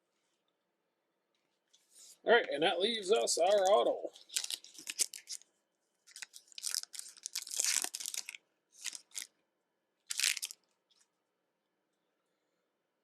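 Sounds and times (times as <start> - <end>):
foil wrapper crinkling and tearing: 3.5 - 5.4, 6.0 - 9.3, 10.1 - 10.7.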